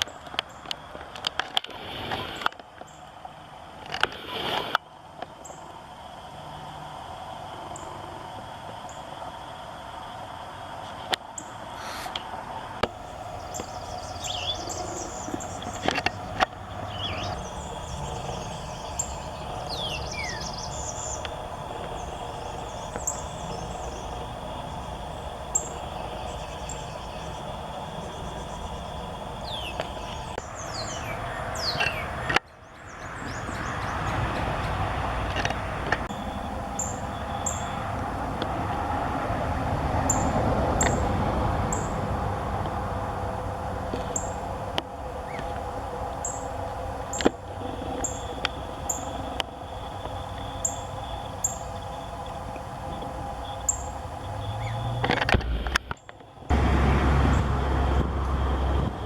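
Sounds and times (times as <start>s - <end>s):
bird chip notes: 12.9s - 39.0s, 39.7s - 56.5s
bird down-slurred whistles: 13.1s - 34.0s, 36.1s - 37.8s.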